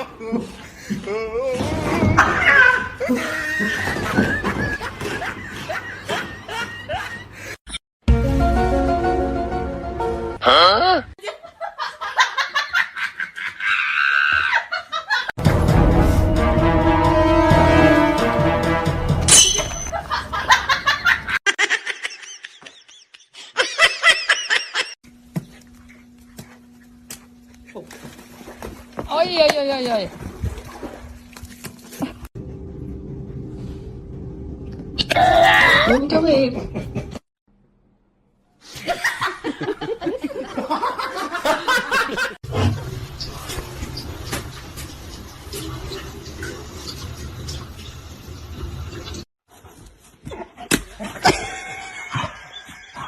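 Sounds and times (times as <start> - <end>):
person laughing: 2.6 - 7.5, 19.9 - 25.0, 50.3 - 53.0.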